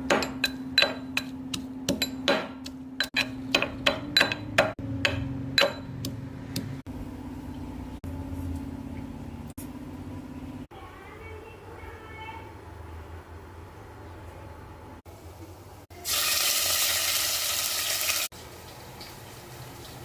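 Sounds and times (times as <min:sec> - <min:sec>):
kitchen knocks and clinks: 0:00.0 - 0:06.8.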